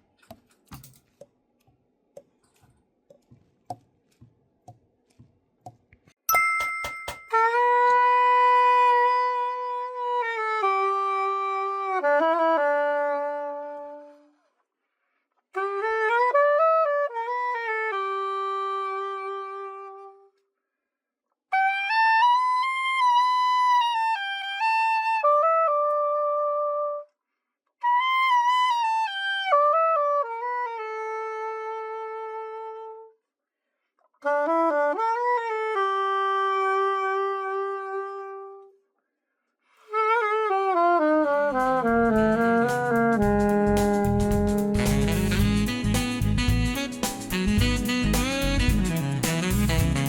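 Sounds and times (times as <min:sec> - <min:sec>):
soprano saxophone melody: 0:07.3 - 0:14.4, 0:15.6 - 0:20.4, 0:21.5 - 0:27.1, 0:27.8 - 0:33.2, 0:34.2 - 0:38.8, 0:39.8 - 0:50.0.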